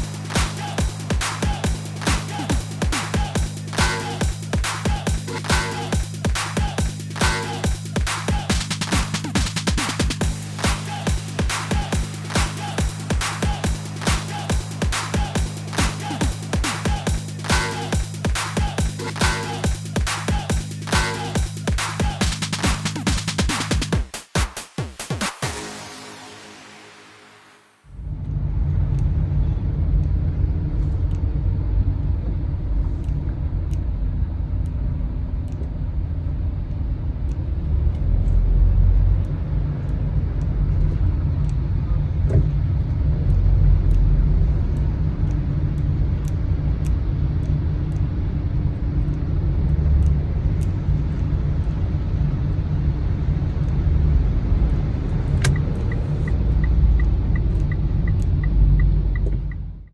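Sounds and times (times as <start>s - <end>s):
rapid even ticking: 0.0s - 25.4s
car road and engine rumble: 28.0s - 59.9s.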